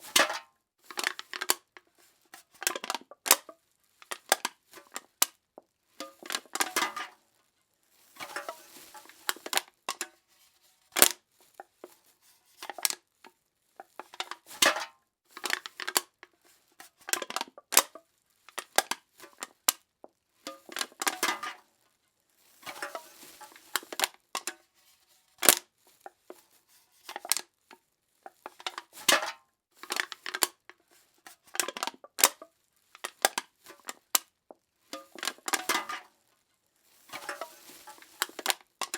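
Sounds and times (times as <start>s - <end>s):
aluminum cans being crushed: 0.0s - 5.1s, 6.0s - 7.2s, 8.2s - 10.1s, 13.8s - 16.1s, 16.9s - 18.0s, 20.5s - 21.6s, 22.6s - 24.6s, 28.3s - 34.2s, 35.0s - 36.1s, 37.1s - 38.9s.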